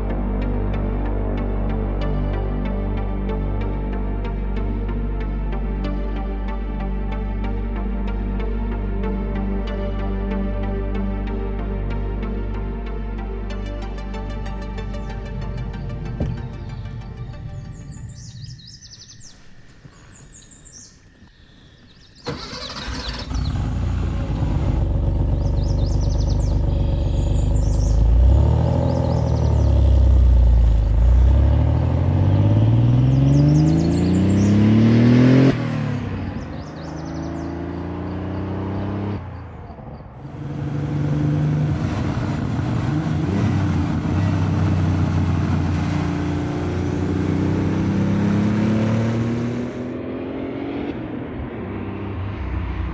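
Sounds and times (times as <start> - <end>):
sports car engine accelerating: 13.6 - 20.4, 22.2 - 52.9
birds chirping: 14.2 - 35.5, 36.2 - 38.7.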